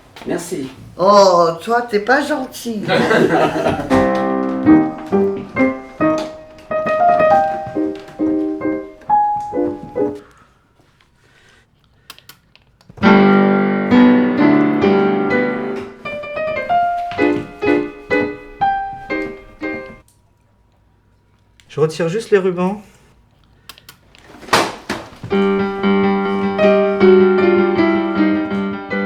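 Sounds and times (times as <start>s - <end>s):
piano music: 2.9s - 10.3s, 13.0s - 20.0s, 25.3s - 29.0s.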